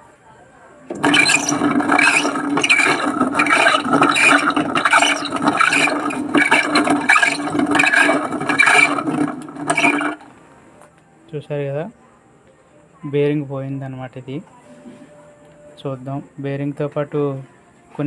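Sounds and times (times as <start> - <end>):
rough grinding rattle: 0.9 - 10.4
wet grinder motor hum: 0.9 - 10.4.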